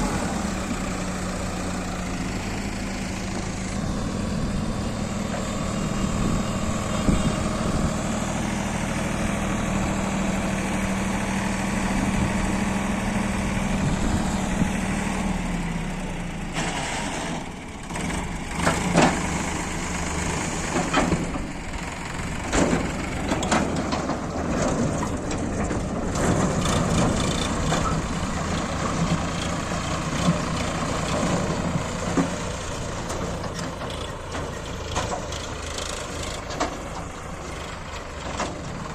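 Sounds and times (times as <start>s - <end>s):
diesel engine running: 0.0s - 38.9s
sharp knocks and clatter: 22.4s - 28.0s.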